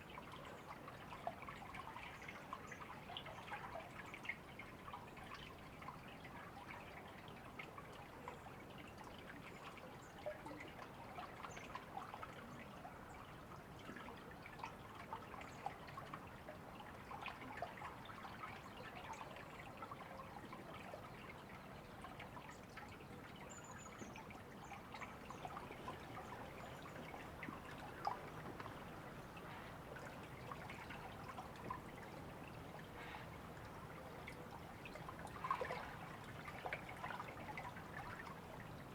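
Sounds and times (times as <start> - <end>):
small water splashes: 0.0 - 38.9.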